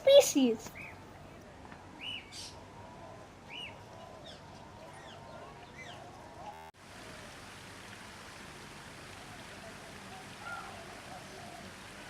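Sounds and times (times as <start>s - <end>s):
bird chirp and warble: 2.0s - 6.7s
running water hiss: 6.7s - 12.0s.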